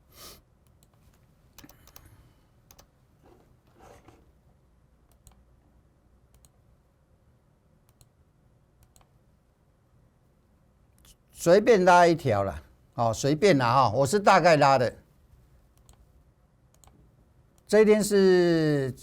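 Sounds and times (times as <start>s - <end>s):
faint computer mouse clicks: 0.6s - 2.9s, 5.1s - 5.4s, 6.3s - 6.6s, 7.9s - 8.1s, 8.8s - 9.2s, 15.8s - 16.1s, 16.7s - 17.0s.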